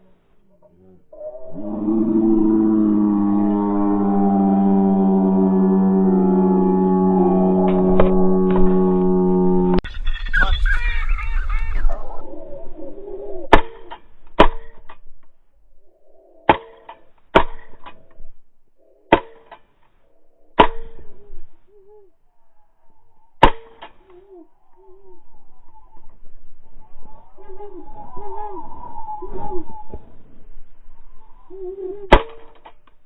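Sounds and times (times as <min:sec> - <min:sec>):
steady droning tone: 0:01.6 - 0:10.6
faint bird calls: 0:09.7 - 0:14.1, 0:15.5 - 0:32.8
shotgun shots: 0:13.5 - 0:14.9, 0:23.4 - 0:24.0, 0:32.1 - 0:32.7.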